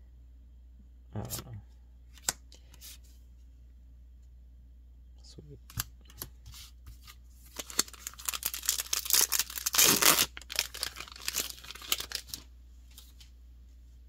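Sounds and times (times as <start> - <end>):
foil wrapper tearing and crinkling: 7.5 - 12.5.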